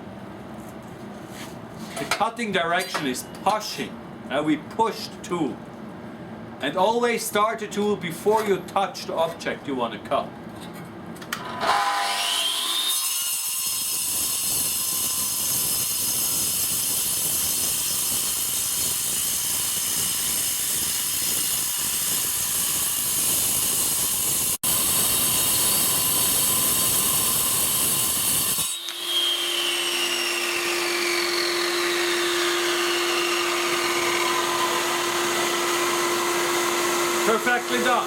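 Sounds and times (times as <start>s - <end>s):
angle grinder cutting concrete: 13.7s - 28.6s, 32.5s - 38.0s
vacuum cleaner humming: 32.5s - 38.0s.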